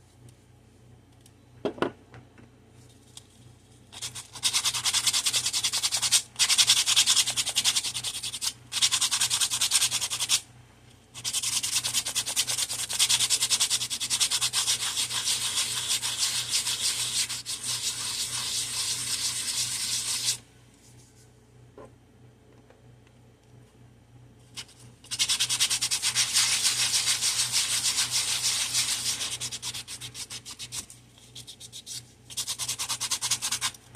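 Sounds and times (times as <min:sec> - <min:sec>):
sandpaper rubbing back and forth: 0:11.2 - 0:20.4, 0:25.1 - 0:30.8.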